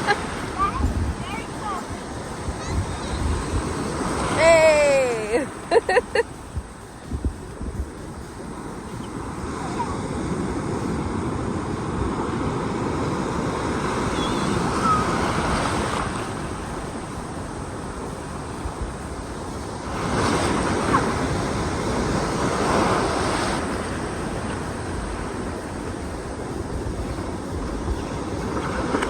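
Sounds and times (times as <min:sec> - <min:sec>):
ocean surf washing onto beach: 0:00.0 - 0:29.0
wind buffeting microphone: 0:00.0 - 0:29.0.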